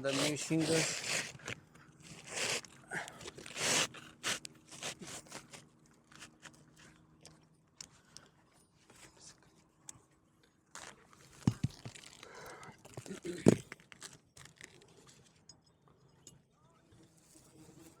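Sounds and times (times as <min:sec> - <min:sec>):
roofing shingle scraping: 0:00.0 - 0:06.6.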